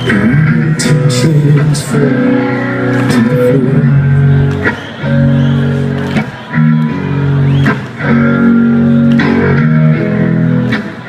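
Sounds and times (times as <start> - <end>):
person singing: 0.0 - 4.1
rock band playing live: 0.0 - 11.0.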